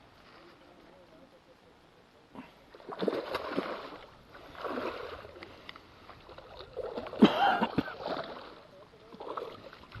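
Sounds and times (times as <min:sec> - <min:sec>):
water sloshing and splashing: 0:02.7 - 0:10.0.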